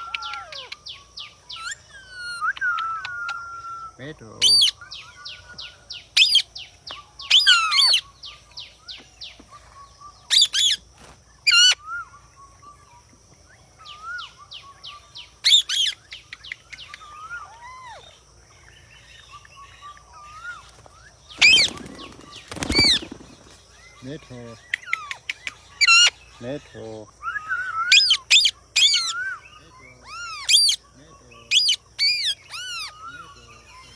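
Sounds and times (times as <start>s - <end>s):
parrots screeching: 0.0s - 0.9s, 1.5s - 5.2s, 7.3s - 8.0s, 11.4s - 12.1s, 15.4s - 16.0s, 16.9s - 18.2s, 21.3s - 23.1s, 24.8s - 26.2s, 27.2s - 30.9s, 31.5s - 33.9s
parrot chirps and whistles: 1.6s - 4.8s, 27.2s - 29.5s, 30.1s - 30.8s, 31.5s - 33.0s.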